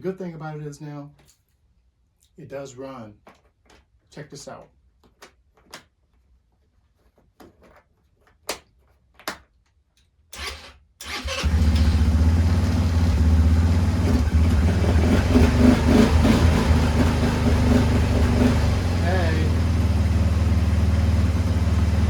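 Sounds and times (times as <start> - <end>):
engine starter cranking: 10.4 - 13.2
engine idling: 10.4 - 22.0.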